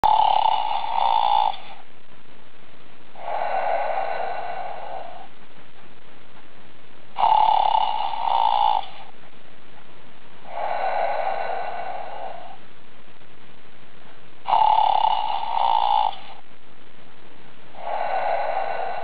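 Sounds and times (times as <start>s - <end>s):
bear snoring: 0.0s - 1.8s, 3.2s - 5.3s, 7.1s - 9.1s, 10.4s - 12.6s, 14.4s - 16.4s, 17.7s - 19.0s.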